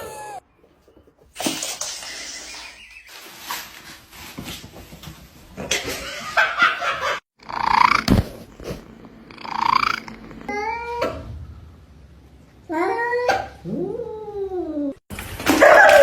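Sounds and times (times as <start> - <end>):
cat meowing: 0.0 - 0.4.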